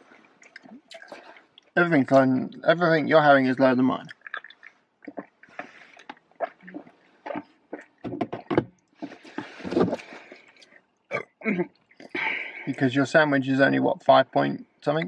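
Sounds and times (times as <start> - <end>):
chewing and wet mouth noises: 0.0 - 1.8, 4.0 - 12.2.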